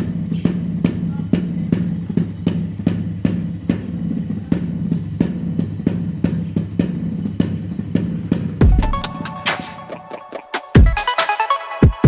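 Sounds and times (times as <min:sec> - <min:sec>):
drum beat: 0:00.0 - 0:12.0
bass line: 0:08.5 - 0:10.2.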